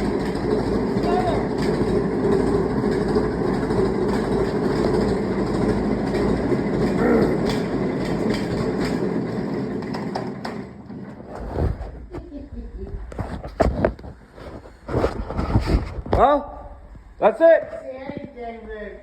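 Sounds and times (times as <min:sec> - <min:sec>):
vehicle running with rattling: 0:00.0 - 0:12.1.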